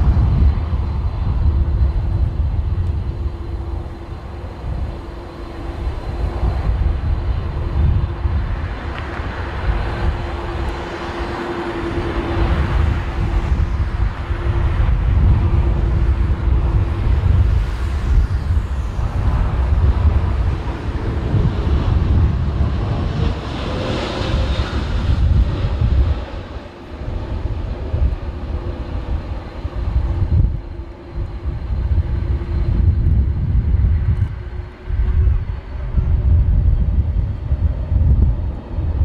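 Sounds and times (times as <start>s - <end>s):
jet airliner engines: 0.0s - 39.0s
wind buffeting microphone: 0.0s - 39.0s.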